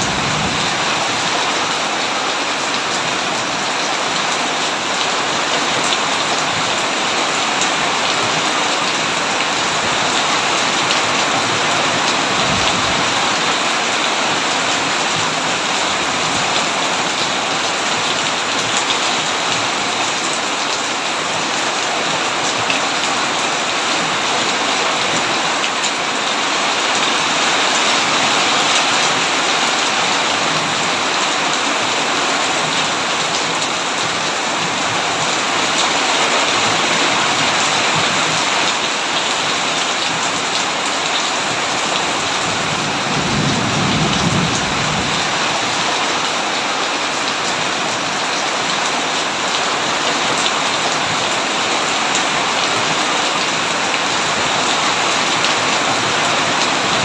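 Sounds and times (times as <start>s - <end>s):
low roll of thunder: 0.0s - 0.8s, 42.9s - 45.3s
heavy rain on a tin roof: 0.0s - 57.0s.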